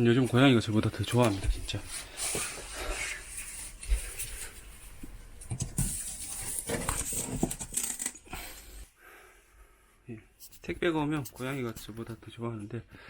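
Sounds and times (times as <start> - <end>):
cardboard rustling: 1.2 - 8.2.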